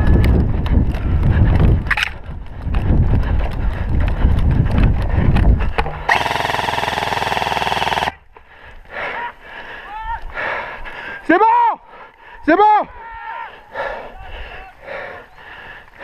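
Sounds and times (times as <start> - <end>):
thumping footsteps: 0.3 - 6.1
electric gun full-auto burst: 6.1 - 8.2.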